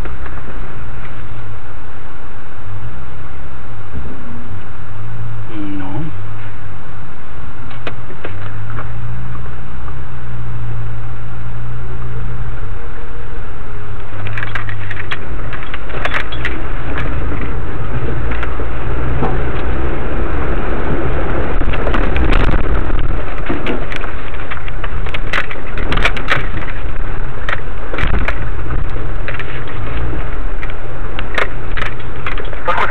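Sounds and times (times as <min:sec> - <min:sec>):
vehicle engine running: 0:00.0 - 0:32.9
rattles and knocks: 0:14.0 - 0:32.9.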